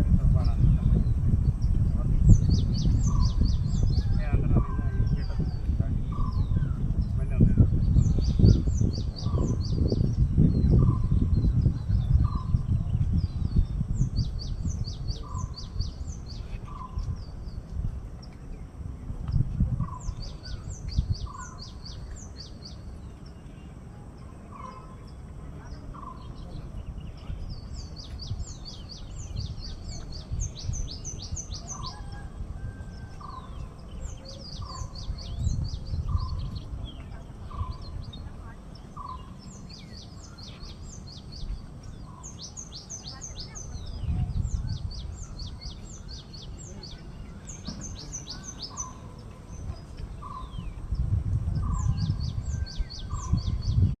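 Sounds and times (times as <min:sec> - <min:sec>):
small songbirds chirping: 0:00.0 - 0:54.0
low rumble: 0:43.8 - 0:54.0.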